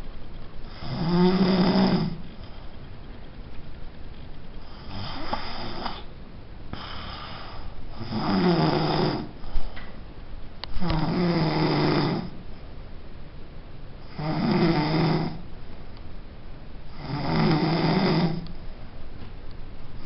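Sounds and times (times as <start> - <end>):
heavy snoring: 0.7 - 2.6, 4.6 - 6.1, 6.8 - 9.4, 10.7 - 12.4, 14.1 - 15.4, 16.9 - 18.5.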